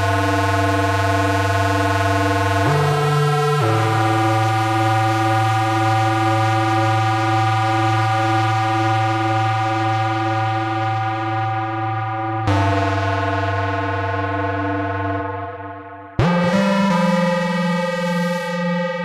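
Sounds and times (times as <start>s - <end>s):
buzzy synthesizer note with echo: 9.5s - 19.0s.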